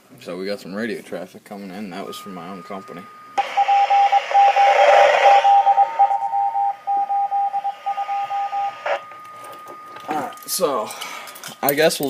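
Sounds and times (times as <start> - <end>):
pager beeping tone: 1.9 - 11.7
radio static hissing: 3.4 - 6.2.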